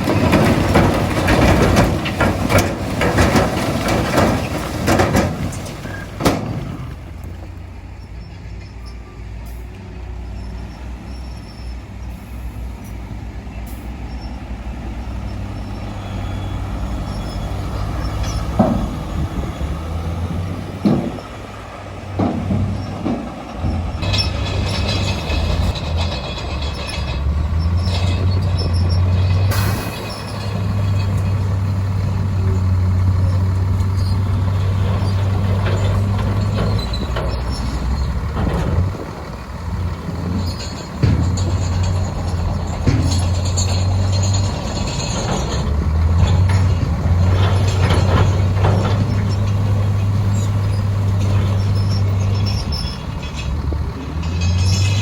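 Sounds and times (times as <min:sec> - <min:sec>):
heavy machinery diesel engine: 0:00.0 - 0:55.0.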